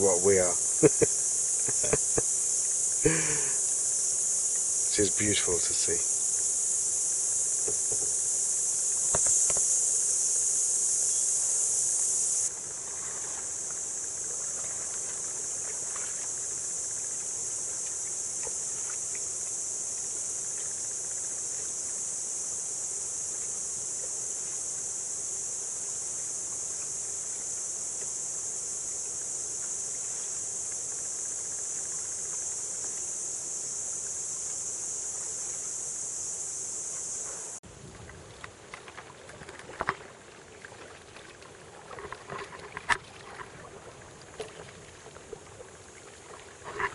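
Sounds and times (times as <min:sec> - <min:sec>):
insects chirping in chorus: 0:00.0 - 0:37.6, 0:38.3 - 0:46.9.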